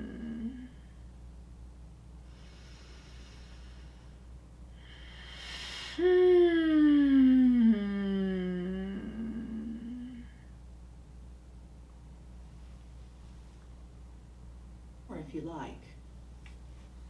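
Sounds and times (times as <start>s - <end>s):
soft breath in: 2.3s - 6.1s.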